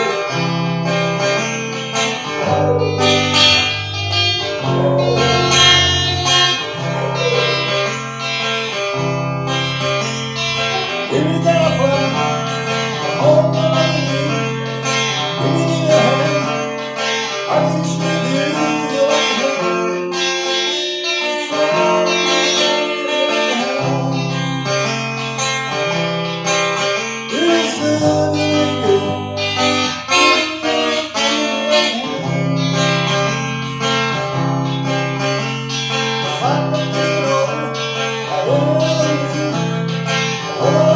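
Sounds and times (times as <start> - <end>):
guitar plucked and strummed: 0.0 - 40.9
bass line: 2.2 - 8.4.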